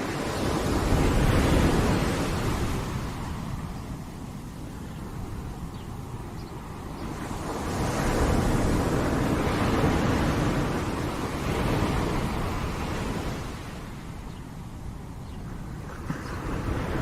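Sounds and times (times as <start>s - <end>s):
ocean waves breaking on shore: 0.0s - 17.0s.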